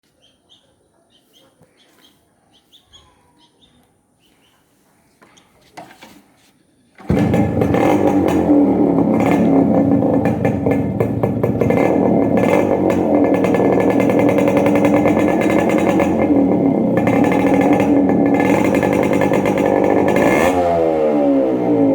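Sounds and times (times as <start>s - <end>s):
motorcycle engine starting and running: 7.0s - 21.9s.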